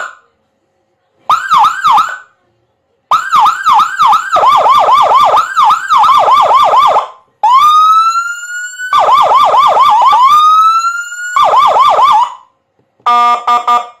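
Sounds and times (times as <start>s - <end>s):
electronic siren yelp and wail: 1.3s - 2.2s, 3.1s - 12.4s.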